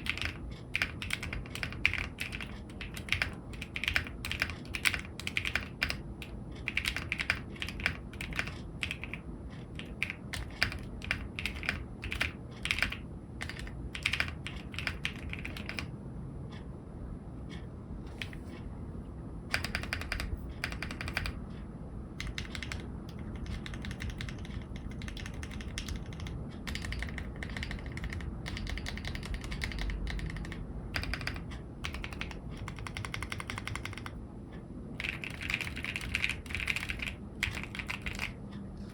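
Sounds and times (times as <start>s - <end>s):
mechanical keyboard typing: 0.0s - 15.9s, 19.5s - 21.4s, 22.2s - 34.2s, 35.0s - 38.4s.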